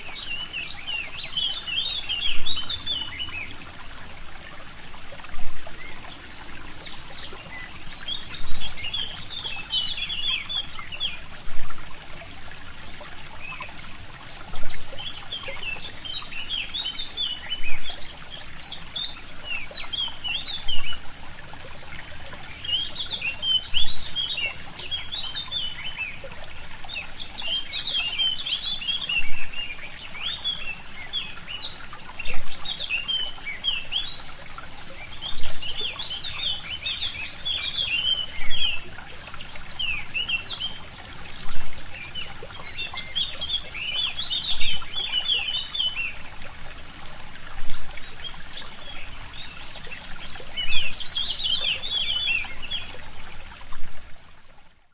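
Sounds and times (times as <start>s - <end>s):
forest birds chirping: 0.0s - 53.8s
stream trickling: 0.0s - 54.9s.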